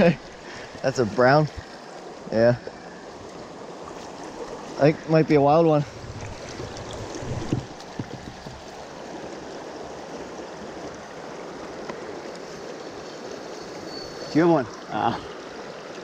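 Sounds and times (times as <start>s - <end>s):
light knocks: 7.4s - 8.7s.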